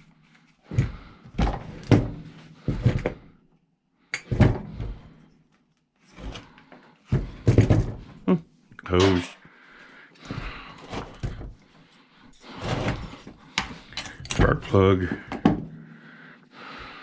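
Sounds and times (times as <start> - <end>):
tools clattering on a workbench: 8.9 - 9.4, 12.7 - 15.7.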